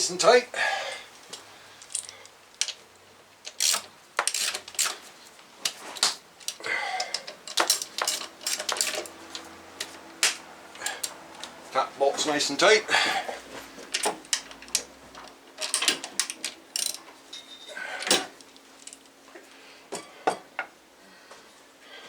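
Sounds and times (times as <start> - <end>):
metal tool clicks: 3.4 - 5.0, 5.6 - 11.6
ratchet wrench clicking: 3.4 - 5.0, 13.9 - 17.0.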